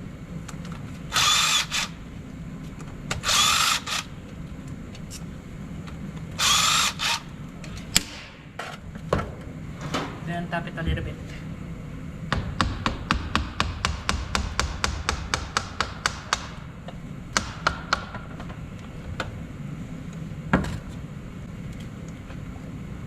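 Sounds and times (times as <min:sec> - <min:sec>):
hammer tapping metal: 0:12.3 - 0:16.6.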